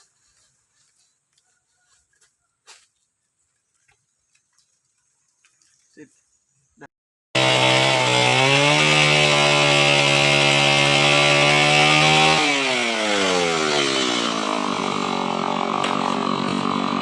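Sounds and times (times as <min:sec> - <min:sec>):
chainsaw at full throttle: 0:07.3 - 0:17.0.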